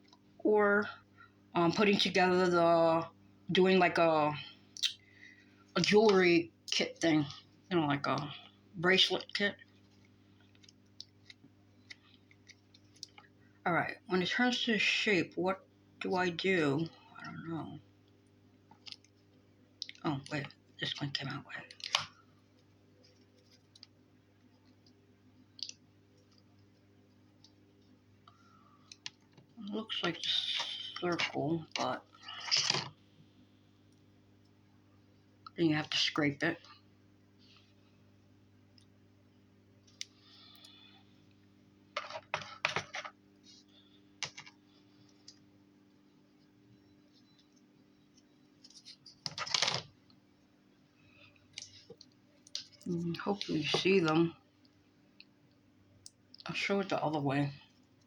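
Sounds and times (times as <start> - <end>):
low steady hum: 0.0 - 58.0
plastic clattering and scraping: 32.3 - 33.0, 42.0 - 43.2, 48.7 - 49.9.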